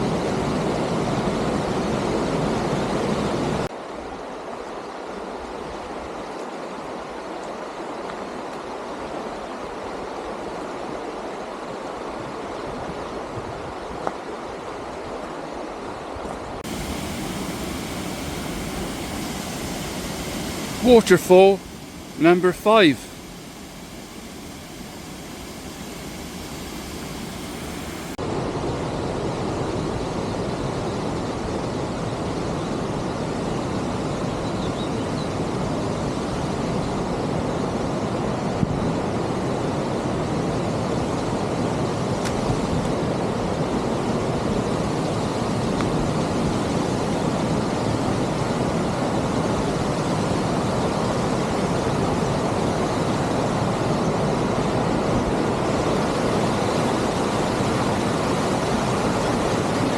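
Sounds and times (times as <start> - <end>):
waterfall rushing: 16.6 - 28.2.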